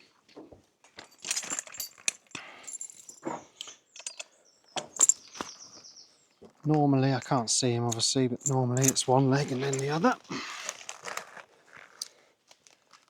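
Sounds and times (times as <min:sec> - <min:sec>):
metal harness fittings clinking: 0:01.0 - 0:05.5, 0:07.2 - 0:12.2.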